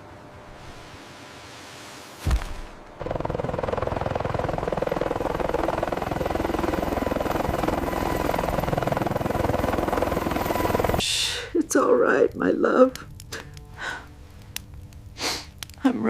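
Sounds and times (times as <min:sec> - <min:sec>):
sudden thump: 0:02.2 - 0:02.9
fast-pulsing mechanical drone: 0:03.0 - 0:11.0.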